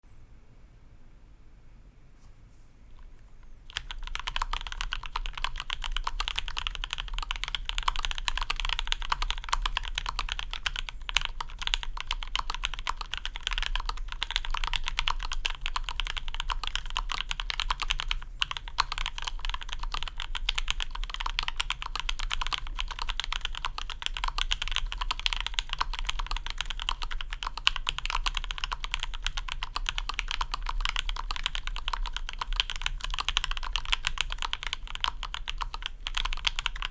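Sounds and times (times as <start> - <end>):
fast mechanical keyboard typing: 3.7 - 36.9.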